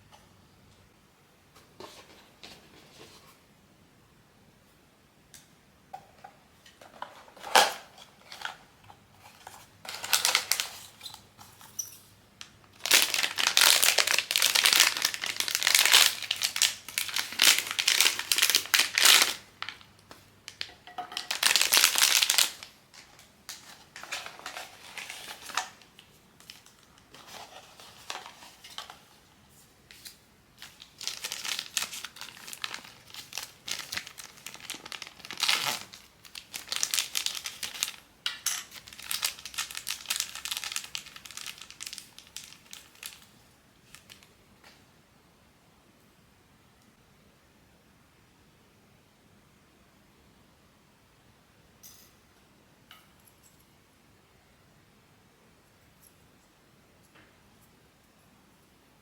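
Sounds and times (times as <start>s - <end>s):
plastic packaging crinkling and tearing: 9.2s - 29.1s, 29.9s - 44.3s.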